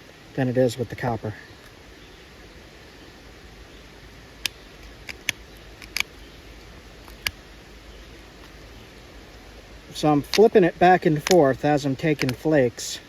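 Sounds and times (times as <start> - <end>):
sharp clicks of stone flaking: 4.4 - 7.5, 10.1 - 12.6.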